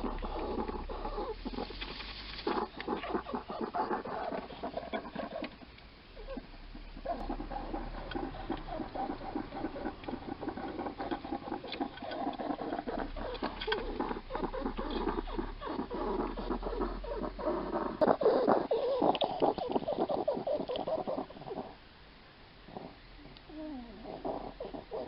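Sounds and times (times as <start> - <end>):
hedgehog chewing clicks: 0.0 - 5.9, 7.1 - 18.2
hedgehog wheezy breathing: 7.0 - 21.8.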